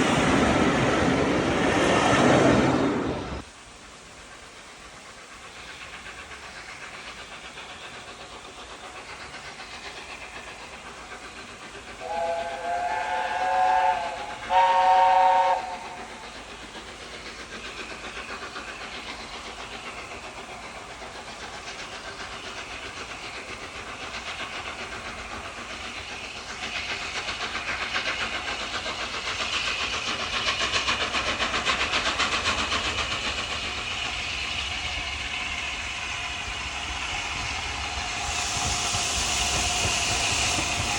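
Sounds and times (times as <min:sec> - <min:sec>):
steam train running: 0:00.0 - 0:40.9
steam locomotive whistle: 0:12.0 - 0:16.2.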